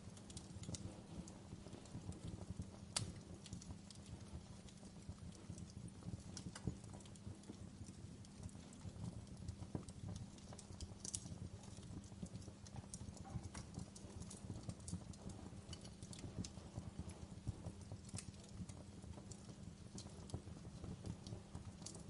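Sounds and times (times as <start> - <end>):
fire crackling and popping: 0.0 - 22.0
low rumble of burning: 0.0 - 22.0.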